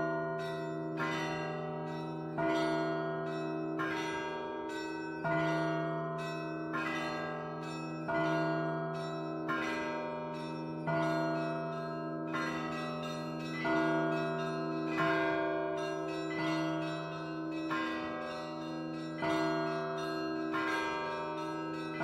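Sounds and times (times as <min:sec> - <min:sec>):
church bells ringing: 0:00.0 - 0:22.0.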